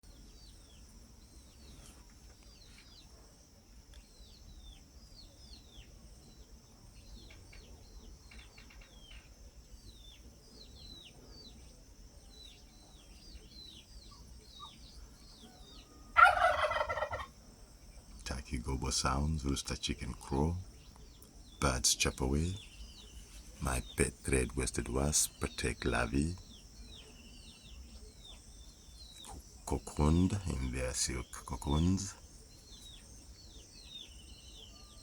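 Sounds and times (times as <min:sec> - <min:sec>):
small birds chirping: 0:00.0 - 0:35.0
turkey gobbling: 0:15.4 - 0:17.4.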